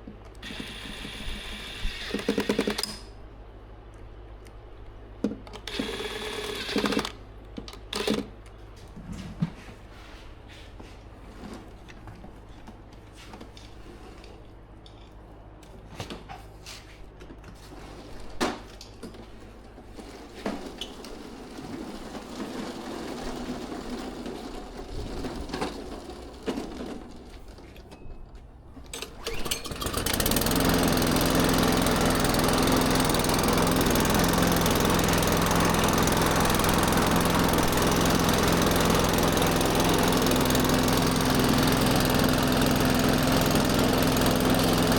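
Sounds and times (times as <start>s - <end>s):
lawn mower engine running: 0.4s - 3.1s, 5.4s - 8.4s, 20.0s - 27.6s, 28.8s - 44.9s.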